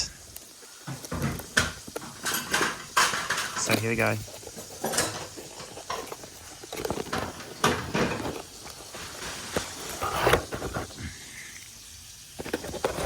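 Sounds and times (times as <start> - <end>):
packaging rustling: 0.4 - 11.1, 12.2 - 13.0
cardboard box being opened: 3.6 - 11.0.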